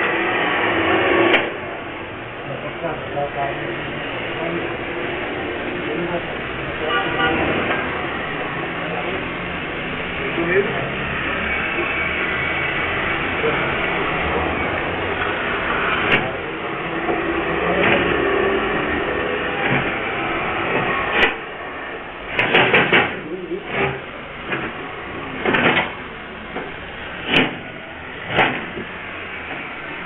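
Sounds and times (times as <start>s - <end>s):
steady background hum: 0.0s - 30.0s.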